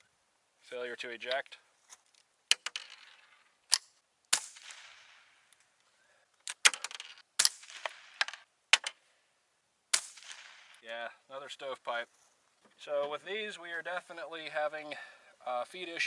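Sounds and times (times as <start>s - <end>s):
rifle shots cracking: 3.7s - 5.4s, 6.5s - 9.0s, 9.9s - 10.8s.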